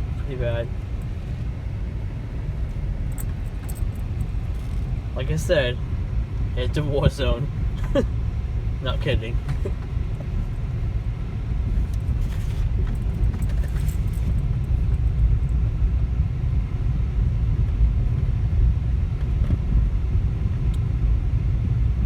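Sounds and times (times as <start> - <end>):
car interior road rumble: 0.0 - 22.0
faint rattles and knocks: 0.1 - 5.1, 9.4 - 10.8, 11.7 - 15.1.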